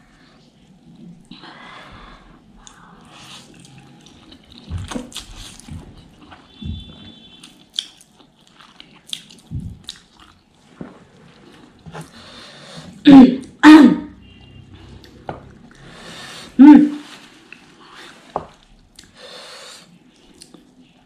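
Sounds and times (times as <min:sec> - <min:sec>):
chewing and biting noodles: 0:03.2 - 0:10.4.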